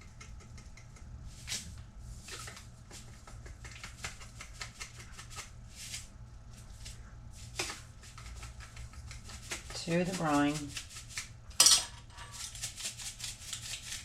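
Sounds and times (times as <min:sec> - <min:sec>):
spoon scooping and scraping salt: 0:12.0 - 0:14.0.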